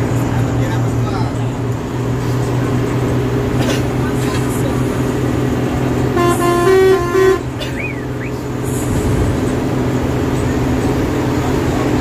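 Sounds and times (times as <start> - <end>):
diesel engine humming: 0.0 - 12.0
bus horn stepped notes: 6.1 - 7.6.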